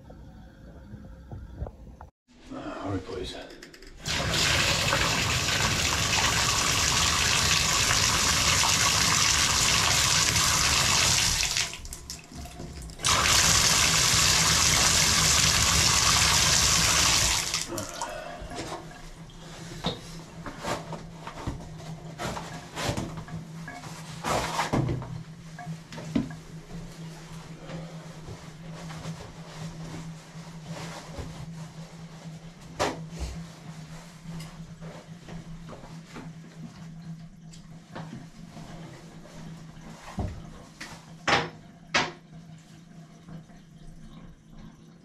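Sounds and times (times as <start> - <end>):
water running from bathtub tap: 4.0 - 18.0.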